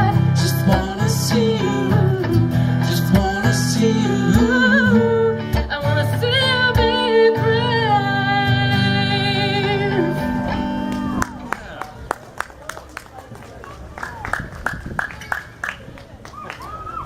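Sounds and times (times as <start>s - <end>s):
guitar accompaniment: 0.0s - 12.2s.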